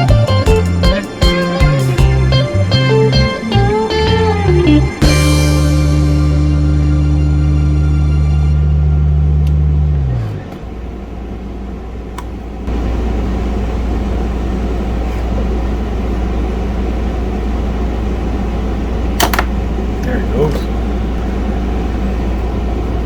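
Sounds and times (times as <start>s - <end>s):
background music: 0.0s - 9.3s
steady low hum: 0.0s - 23.0s.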